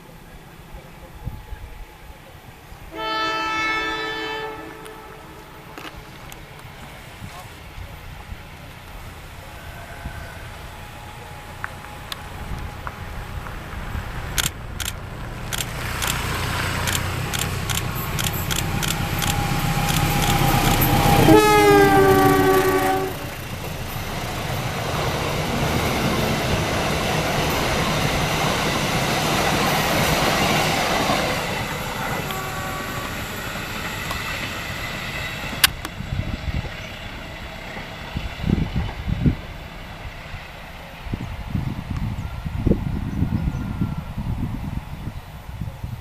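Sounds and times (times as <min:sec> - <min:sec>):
rumble of train cars passing: 0:00.0 - 0:46.0
locomotive horn blast: 0:02.8 - 0:06.1, 0:18.0 - 0:23.5, 0:31.7 - 0:33.6
train wheels clicking over rail joints: 0:10.9 - 0:22.1, 0:23.3 - 0:40.8.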